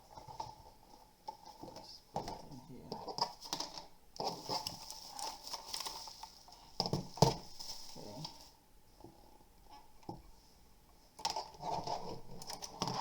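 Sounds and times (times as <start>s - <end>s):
packaging rustling and crinkling: 1.6s - 8.6s.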